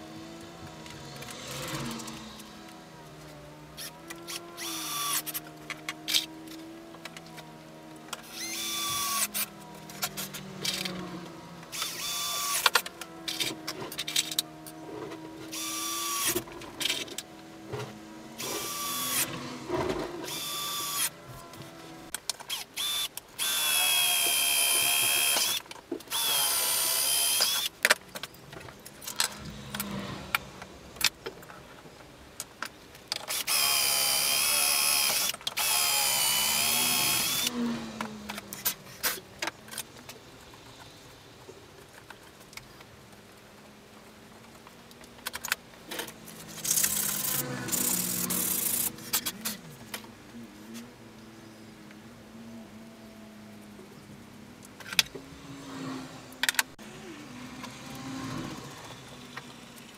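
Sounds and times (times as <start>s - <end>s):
power drill running in spurts: 0.1s - 6.3s, 8.1s - 14.4s, 15.4s - 17.2s, 18.3s - 21.5s, 22.5s - 27.8s, 33.2s - 38.1s, 46.5s - 49.6s.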